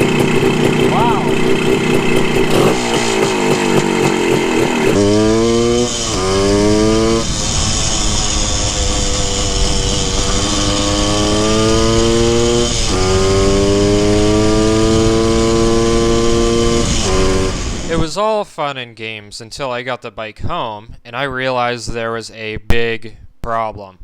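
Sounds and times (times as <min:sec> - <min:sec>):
two-stroke motorcycle engine accelerating: 0:00.0 - 0:18.2.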